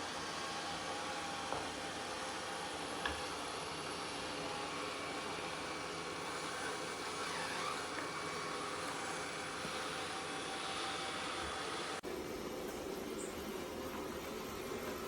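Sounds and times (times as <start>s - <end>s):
robot vacuum running: 0.0s - 12.0s.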